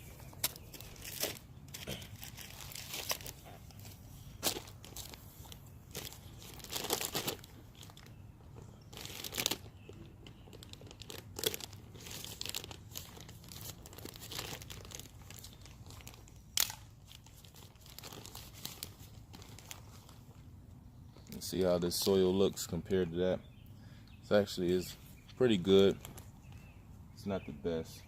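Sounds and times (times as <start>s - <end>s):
plastic bag crinkling: 0.0s - 8.2s, 8.8s - 20.4s.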